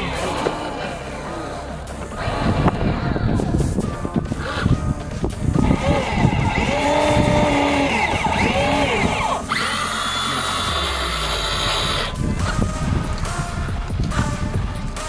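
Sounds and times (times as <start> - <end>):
small electric motors whining: 5.6 - 12.2.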